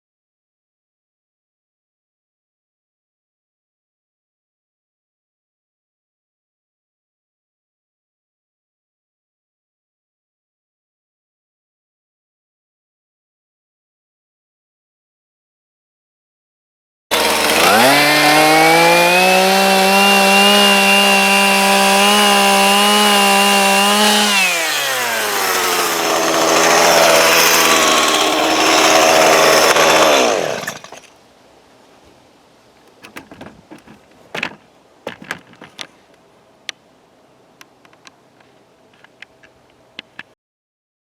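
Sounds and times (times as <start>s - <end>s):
chainsaw engine running: 17.1s - 31.0s.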